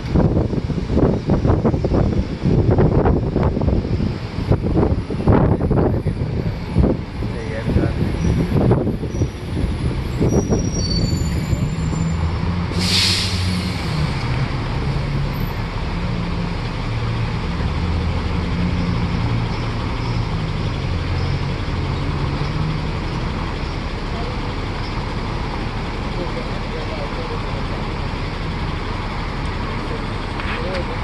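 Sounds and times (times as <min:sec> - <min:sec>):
bus engine running: 0:00.0 - 0:31.0
air brakes hissing: 0:10.3 - 0:14.1.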